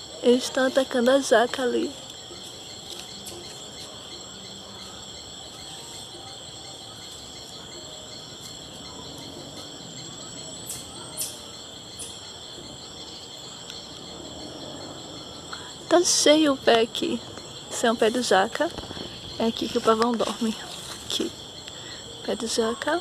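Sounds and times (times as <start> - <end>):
insects chirping chorus: 0.0 - 23.0
sharp very high chirps: 6.8 - 12.4.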